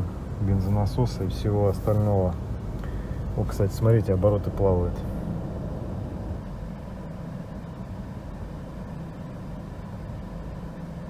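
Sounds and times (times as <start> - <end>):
car engine idling unevenly: 0.0 - 11.0.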